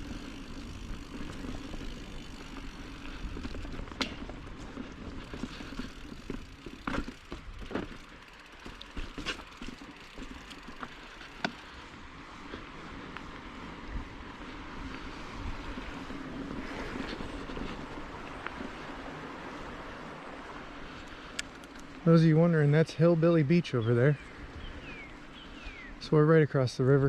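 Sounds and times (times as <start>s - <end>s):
bike tyres on dirt: 0.0s - 27.0s
bike knocks and rattles: 0.6s - 11.6s.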